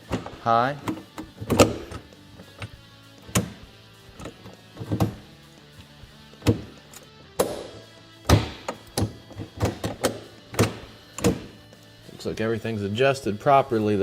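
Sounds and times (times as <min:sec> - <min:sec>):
shifter lever clunking: 0:00.0 - 0:05.3, 0:06.4 - 0:07.7, 0:08.3 - 0:11.6
background music: 0:00.0 - 0:14.0.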